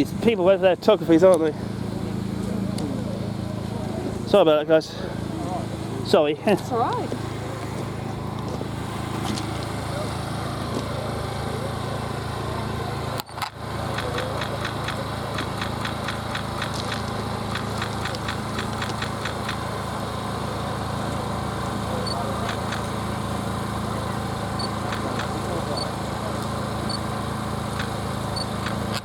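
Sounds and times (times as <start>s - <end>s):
engine idling: 0.0s - 29.0s
quick evenly spaced clicks: 13.4s - 19.9s, 22.0s - 23.1s, 24.6s - 27.1s, 27.7s - 29.0s.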